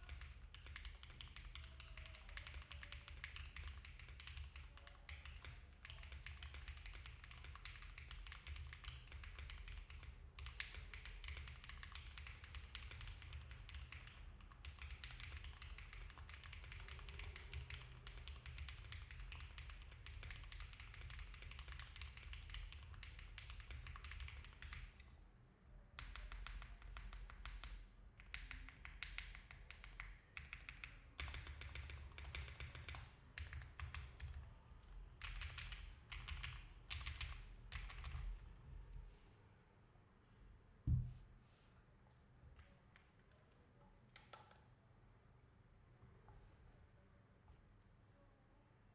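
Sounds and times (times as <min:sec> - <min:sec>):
mechanical keyboard typing: 0:00.0 - 0:25.0, 0:26.0 - 0:34.5, 0:35.1 - 0:38.4.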